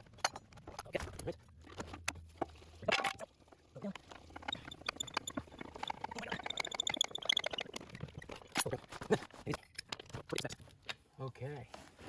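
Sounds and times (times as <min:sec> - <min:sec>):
small metal clicks and clinks: 0:09.5 - 0:11.5.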